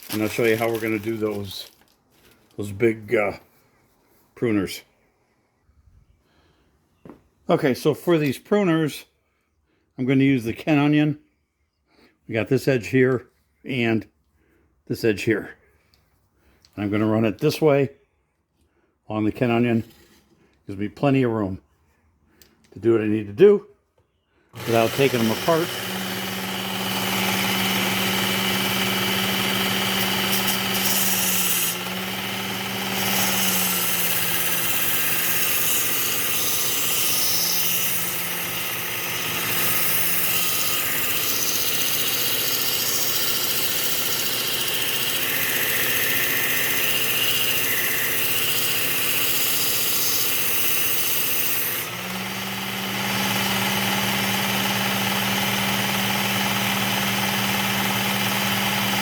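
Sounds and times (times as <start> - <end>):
sharpener motor hum: 24.6 - 59.0.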